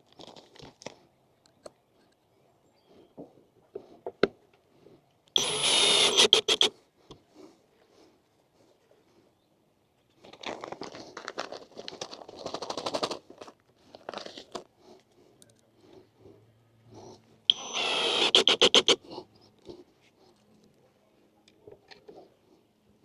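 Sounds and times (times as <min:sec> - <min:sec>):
rapid sharp clicks: 0:05.4 - 0:06.7, 0:17.5 - 0:19.0
packaging crinkling and scraping: 0:10.3 - 0:14.7.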